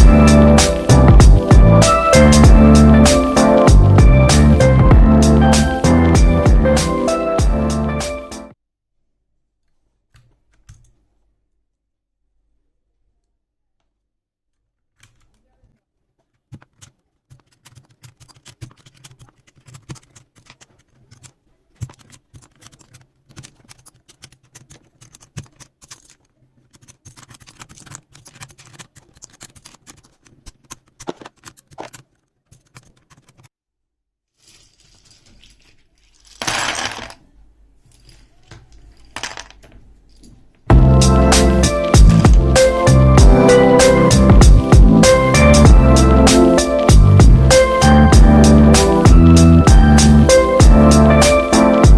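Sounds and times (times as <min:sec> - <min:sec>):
plastic keyboard parts clicking: 0:14.9 - 0:15.5, 0:16.2 - 0:33.5
rustling scrape: 0:34.4 - 0:37.1.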